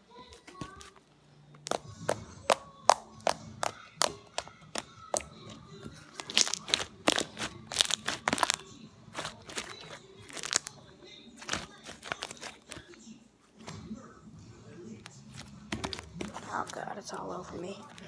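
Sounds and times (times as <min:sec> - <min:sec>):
slime squeezed popping and crackling: 0:01.6 - 0:10.8, 0:11.4 - 0:12.9.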